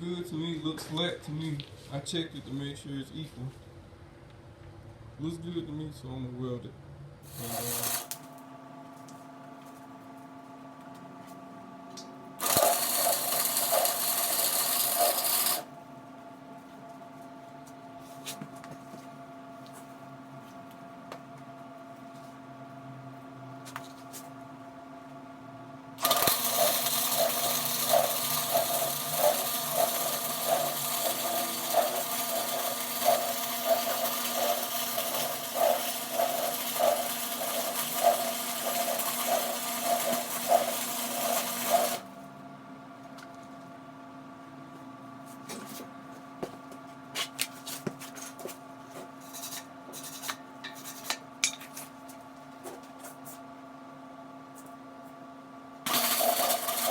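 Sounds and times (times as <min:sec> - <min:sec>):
welder arc crackling and hissing: 0:07.3 - 0:08.4, 0:12.4 - 0:15.7, 0:26.0 - 0:42.1, 0:55.9 - 0:56.9.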